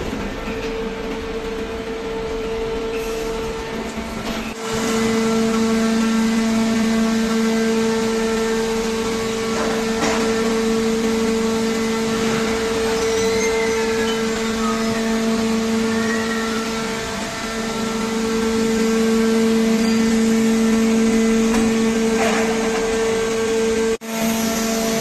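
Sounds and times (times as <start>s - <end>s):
machinery humming: 0.0s - 25.0s
faint short squeals: 12.8s - 15.2s.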